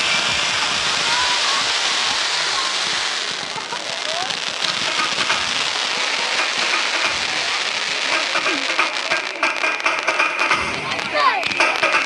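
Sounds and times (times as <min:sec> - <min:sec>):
fireworks crackling: 0:00.0 - 0:12.0.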